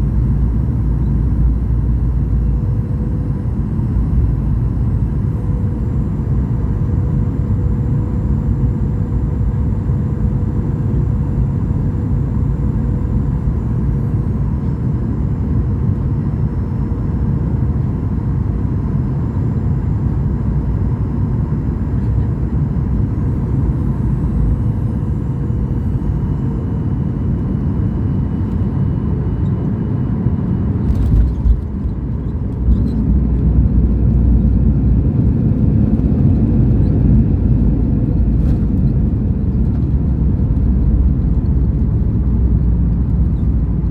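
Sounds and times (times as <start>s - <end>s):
heavy low rumble: 0.0s - 6.1s, 30.1s - 43.9s
airplane cabin engine rumble: 0.0s - 43.9s
faint whining tones: 17.8s - 43.9s.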